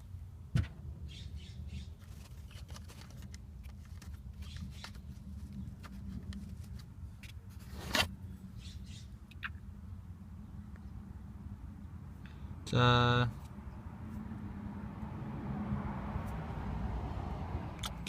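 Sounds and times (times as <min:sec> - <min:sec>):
hands handling small parts: 0:02.0 - 0:08.1.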